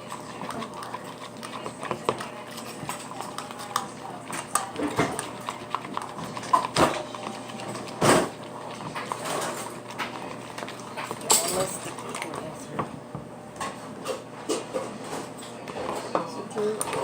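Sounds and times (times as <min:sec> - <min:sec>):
slime stirred with utensil: 0:00.0 - 0:13.2.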